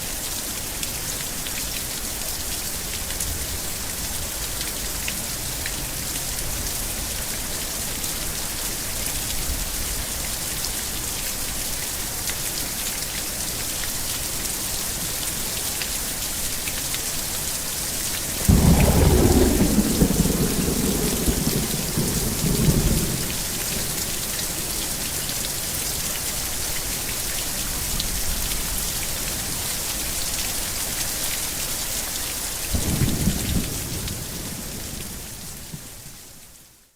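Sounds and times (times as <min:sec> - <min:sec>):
steady rain hissing: 0:00.0 - 0:36.9
thunder rumbling: 0:18.4 - 0:25.1, 0:32.8 - 0:35.9.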